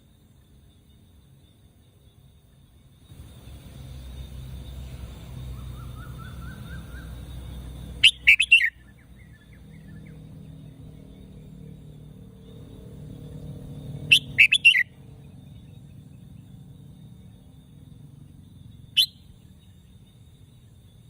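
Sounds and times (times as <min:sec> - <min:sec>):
faint rising bird chirps: 0:02.5 - 0:21.0
bird singing quick notes: 0:08.0 - 0:10.2, 0:14.0 - 0:14.9.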